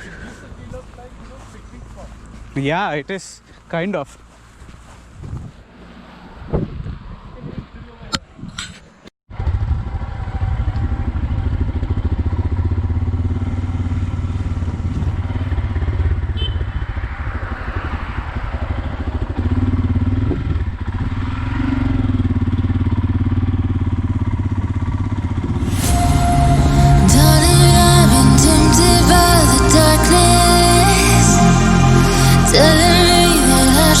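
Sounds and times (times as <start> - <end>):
motorcycle engine droning: 9.3 - 34.0
broad rush of noise: 25.5 - 34.0.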